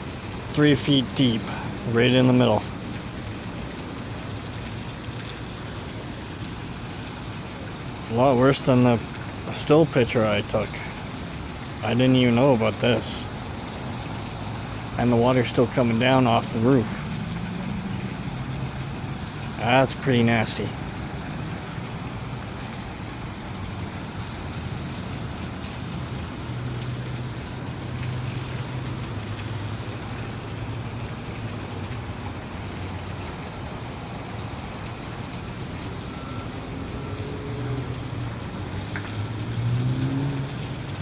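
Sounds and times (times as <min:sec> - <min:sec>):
rainwater splashing: 0:00.0 - 0:41.0
vehicle engine hum: 0:09.7 - 0:41.0.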